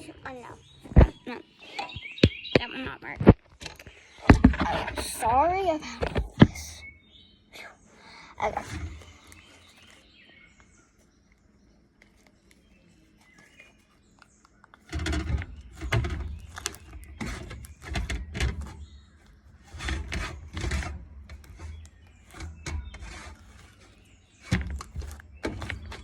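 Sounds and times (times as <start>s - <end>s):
heavy thumps and knocks: 0.8s - 6.8s.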